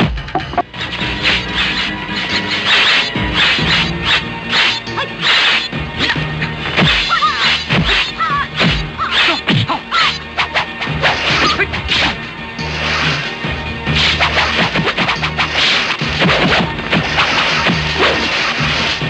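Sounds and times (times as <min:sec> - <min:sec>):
music with low held notes: 0:00.0 - 0:19.0
whooshing swings: 0:00.4 - 0:19.0
punch and kick impacts: 0:06.7 - 0:09.7, 0:13.9 - 0:19.0.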